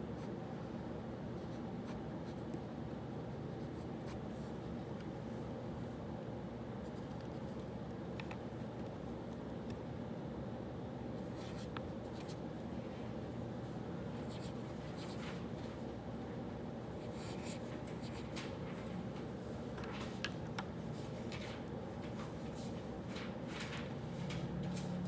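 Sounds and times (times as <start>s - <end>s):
low room hum: 0.0s - 25.0s.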